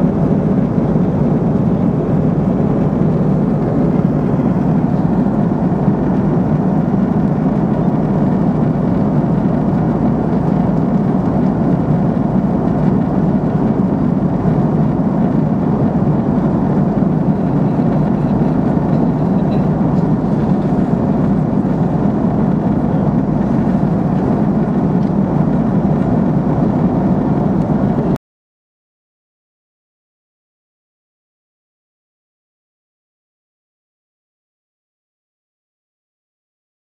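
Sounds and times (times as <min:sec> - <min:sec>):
airliner cabin roar: 0:00.0 - 0:28.2.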